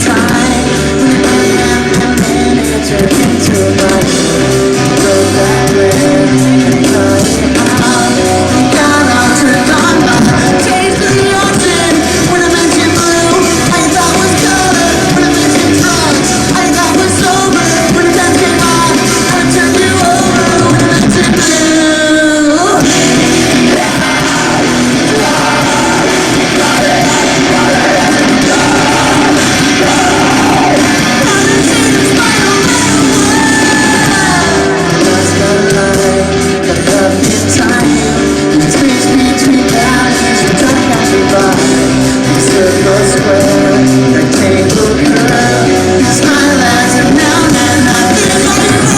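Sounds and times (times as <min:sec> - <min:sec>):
person singing: 0:00.0 - 0:48.9
rock band playing live: 0:00.0 - 0:48.9.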